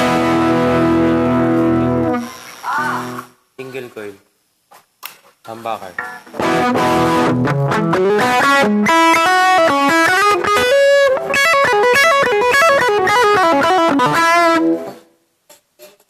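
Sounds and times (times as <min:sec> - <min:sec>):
electric guitar melodic line: 0:00.0 - 0:02.3, 0:06.0 - 0:15.0.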